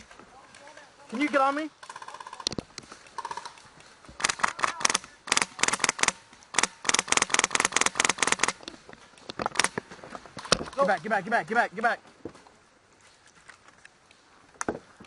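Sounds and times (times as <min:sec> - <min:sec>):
airsoft rifle bursts: 0:03.2 - 0:08.6.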